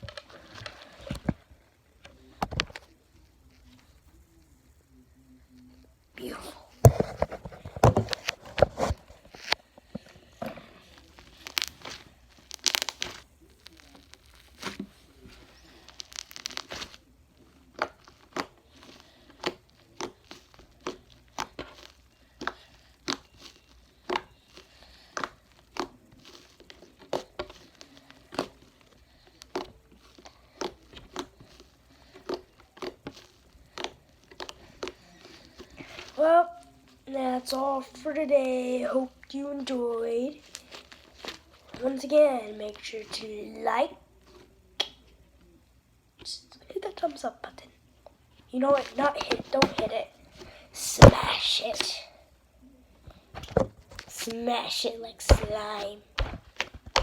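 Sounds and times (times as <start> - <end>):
slime crackling and popping: 10.2 - 37.7, 39.3 - 43.2, 48.6 - 52.0, 54.0 - 57.0.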